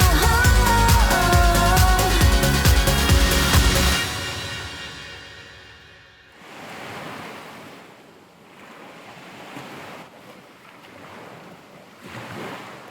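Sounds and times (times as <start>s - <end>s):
background music: 0.0s - 6.3s
sea waves washing in: 0.1s - 7.9s.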